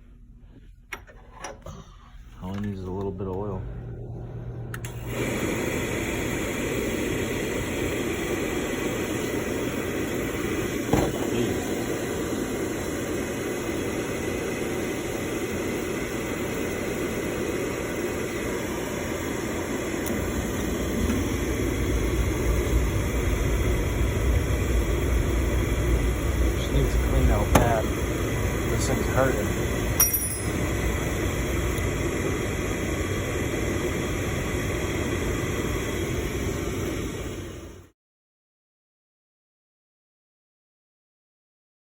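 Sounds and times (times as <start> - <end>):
oil burner blower and flame: 0.9 - 37.9
person talking: 26.6 - 28.0.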